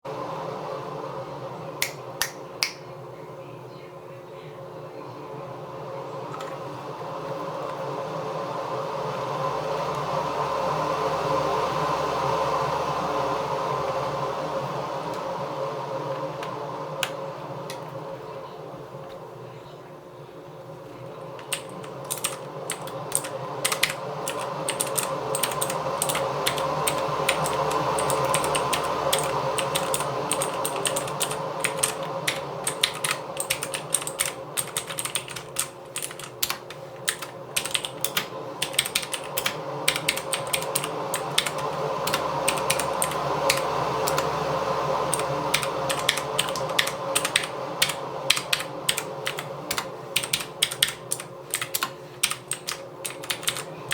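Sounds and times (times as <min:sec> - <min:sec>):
steady background hum: 0:00.0 - 0:53.9
mechanical keyboard typing: 0:21.4 - 0:44.3, 0:45.1 - 0:53.9.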